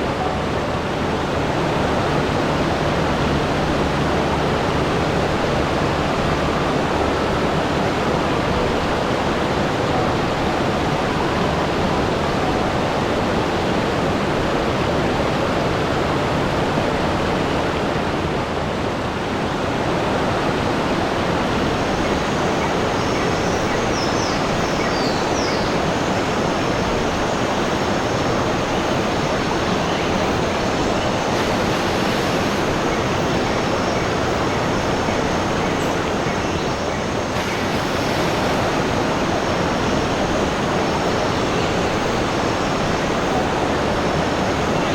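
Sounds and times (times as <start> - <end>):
faint high-pitched tones: 0.0 - 14.7
rushing water: 0.0 - 44.9.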